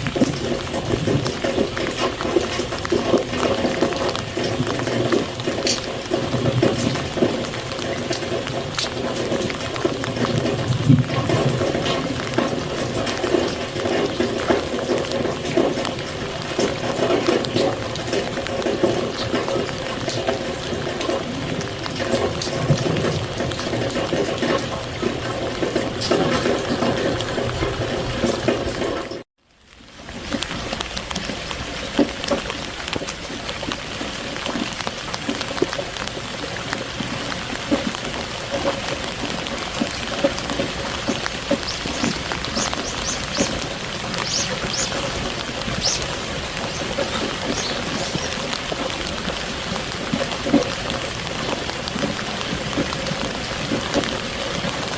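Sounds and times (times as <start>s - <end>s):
close raindrops splashing: 0.0s - 54.9s
steady rain falling: 0.0s - 54.9s.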